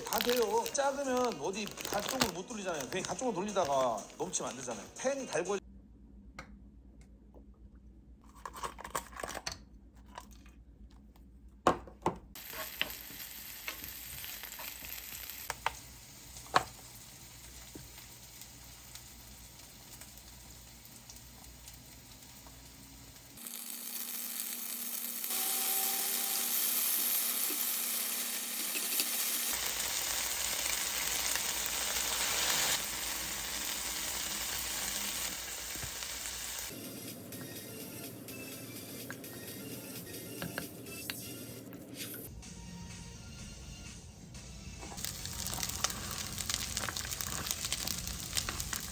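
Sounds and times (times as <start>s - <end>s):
oil sizzling in a frying pan: 12.4s - 36.7s, 45.0s - 48.9s.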